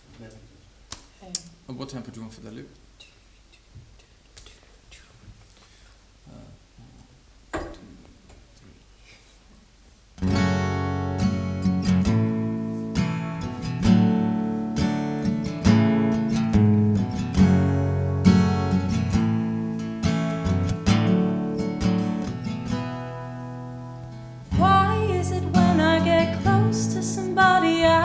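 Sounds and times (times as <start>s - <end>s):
acoustic guitar strumming chords: 10.2s - 28.0s.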